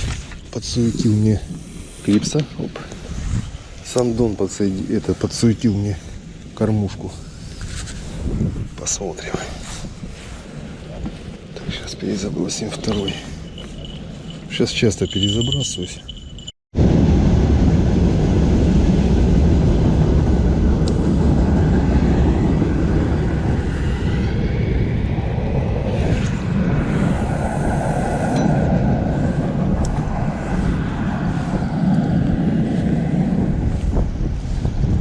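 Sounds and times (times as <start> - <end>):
wind buffeting microphone: 0.0 - 35.0
faint wavering whine: 10.6 - 16.5.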